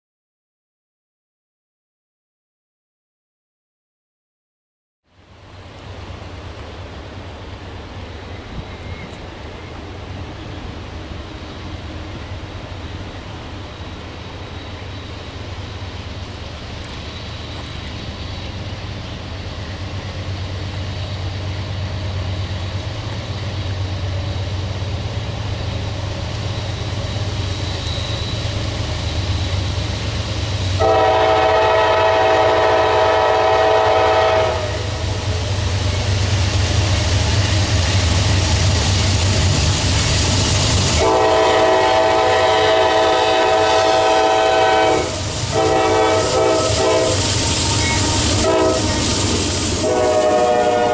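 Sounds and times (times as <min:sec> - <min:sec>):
train rumble: 0:05.1 - 0:50.9
locomotive air horn: 0:30.8 - 0:35.3, 0:41.0 - 0:49.1, 0:49.8 - 0:50.9.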